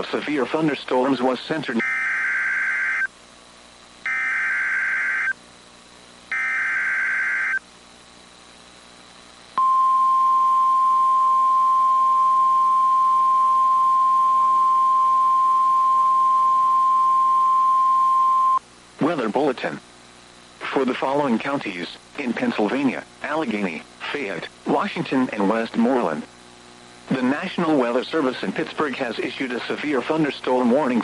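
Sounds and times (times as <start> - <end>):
steady warning alarm tone: 1.8 - 3.1, 4.0 - 5.4, 6.3 - 7.6
digital header bursts: 6.3 - 7.6.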